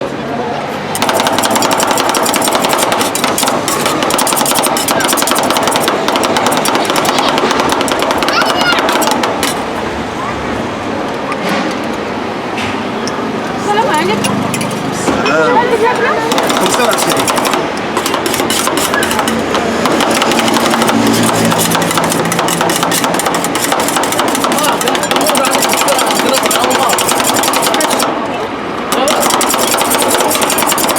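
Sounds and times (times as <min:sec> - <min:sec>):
metal spatulas clattering on steel plate: 0:16.4 - 0:28.0.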